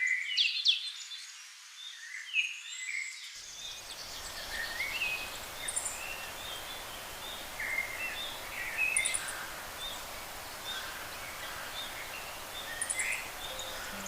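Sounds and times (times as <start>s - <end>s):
small birds chirping: 3.4s - 14.0s
steady background hiss: 3.4s - 14.0s.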